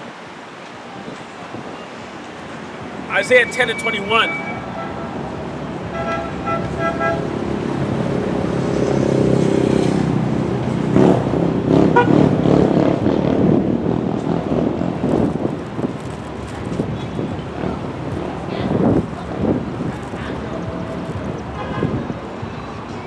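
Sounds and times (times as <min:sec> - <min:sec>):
vehicle passing: 0:02.4 - 0:22.7
beeping horn toots: 0:03.1 - 0:05.2.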